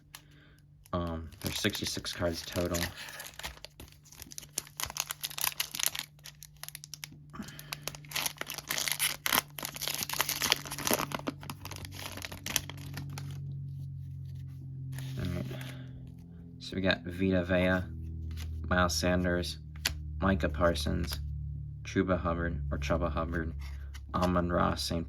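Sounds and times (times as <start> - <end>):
plastic wrappers crinkling and ripping: 0.0 - 13.6
low steady hum: 0.0 - 25.0.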